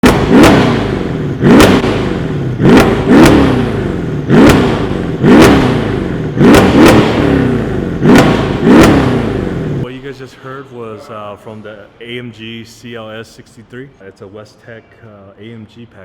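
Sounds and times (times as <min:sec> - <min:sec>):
car engine revving hard: 0:00.0 - 0:09.9.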